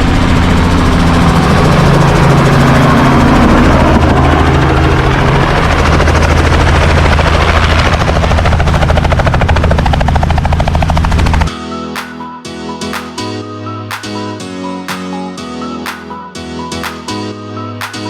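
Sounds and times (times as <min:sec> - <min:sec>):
helicopter engine and rotor: 0:00.0 - 0:13.2
background music with plucked notes: 0:11.5 - 0:18.0.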